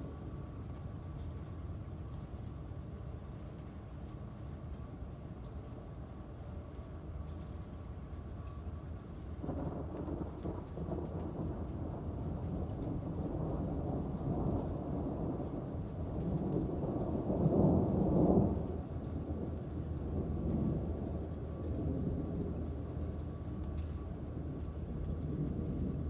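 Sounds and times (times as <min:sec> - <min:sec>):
steady rain: 0:00.0 - 0:26.0
rolling thunder: 0:09.4 - 0:26.0.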